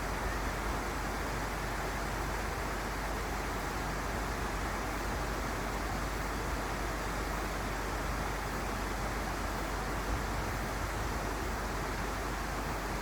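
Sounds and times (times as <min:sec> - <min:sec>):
mountain stream flowing: 0:00.0 - 0:13.0.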